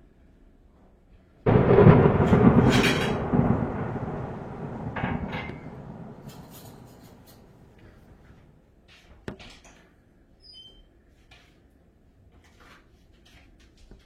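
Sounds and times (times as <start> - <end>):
wind buffeting microphone: 1.5 - 8.3.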